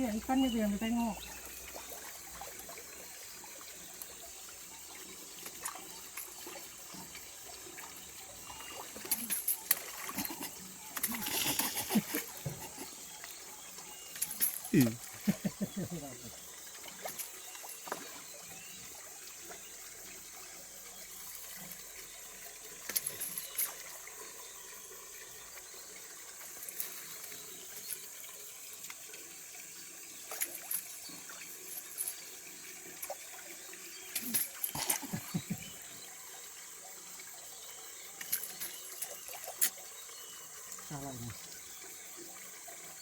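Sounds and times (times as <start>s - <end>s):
trickle of running water: 0.0s - 43.0s.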